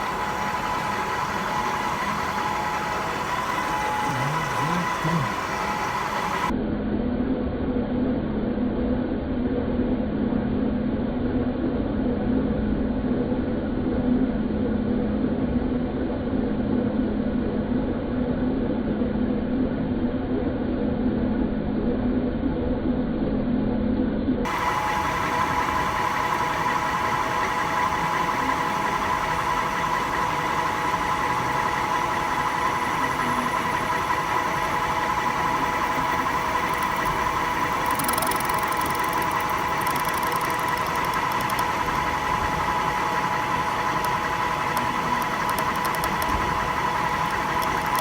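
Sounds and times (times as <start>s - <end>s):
metal lathe whining: 0.0s - 6.5s, 24.5s - 48.0s
scratchy metal cutting noise: 30.9s - 48.0s.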